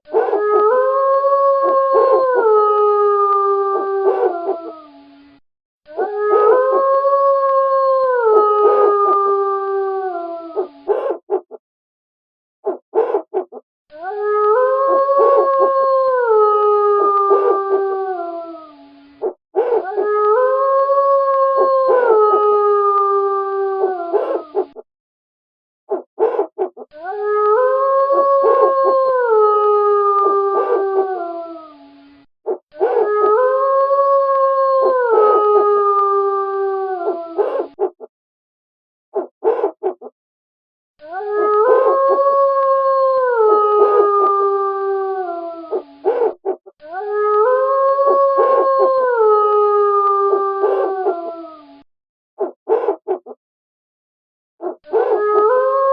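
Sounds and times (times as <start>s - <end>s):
wolves howling: 0.1s - 5.1s, 5.9s - 11.6s, 14.0s - 24.8s, 25.9s - 38.1s, 39.2s - 40.1s, 41.0s - 51.8s, 52.4s - 53.3s, 54.6s - 55.9s.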